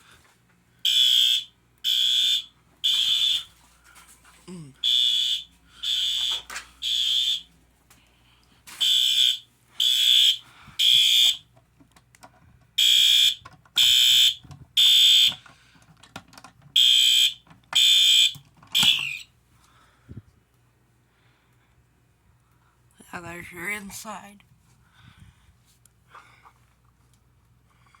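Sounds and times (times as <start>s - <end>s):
fire alarm horn blasts: 0.8s - 3.6s, 4.8s - 7.5s, 8.7s - 11.5s, 12.8s - 15.4s, 16.8s - 19.3s.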